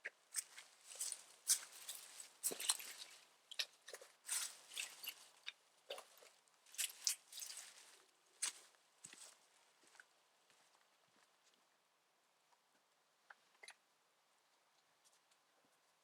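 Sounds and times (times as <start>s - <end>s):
crunching and crackling: 0.3s - 9.3s.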